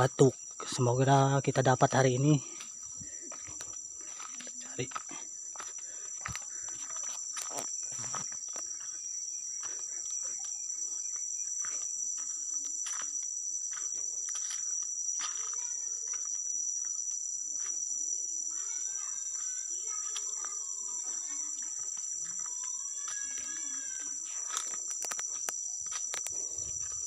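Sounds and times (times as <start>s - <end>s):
high-pitched insect chorus: 0.0s - 27.0s
footsteps through vegetation: 2.5s - 15.7s, 19.0s - 27.0s.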